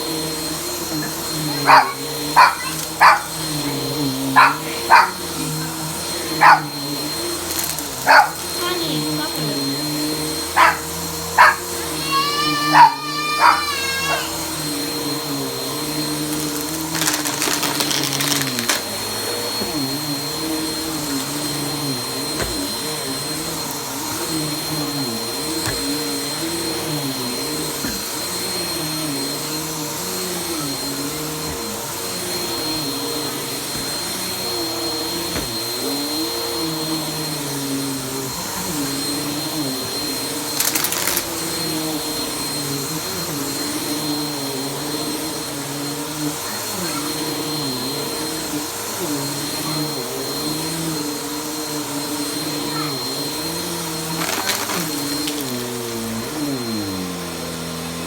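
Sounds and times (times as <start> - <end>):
vacuum cleaner on carpet: 0.0 - 58.0
dog crying: 0.9 - 5.6, 6.3 - 6.8, 8.0 - 8.5, 10.5 - 14.6.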